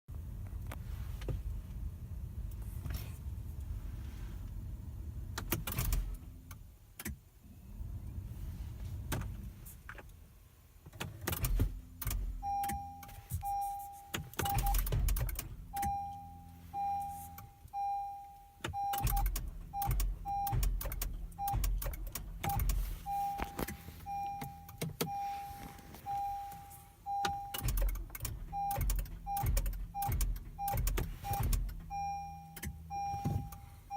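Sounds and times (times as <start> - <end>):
car clicks and knocks: 5.3 - 7.2, 10.9 - 13.2, 14.1 - 16.1, 18.6 - 26.0, 27.1 - 33.6
warning chime beeping: 12.4 - 14.8, 22.5 - 27.6.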